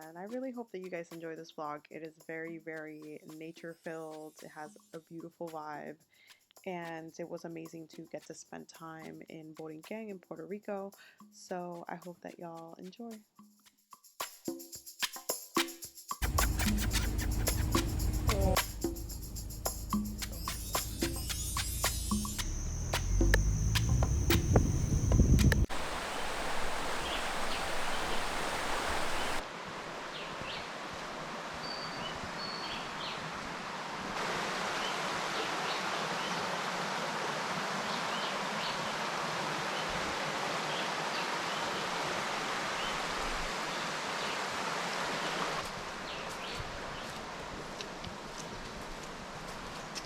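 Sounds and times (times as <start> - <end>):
whistled notes: 16.2 - 25.7
faint chirps: 16.2 - 29.4
rushing water: 16.2 - 50.0.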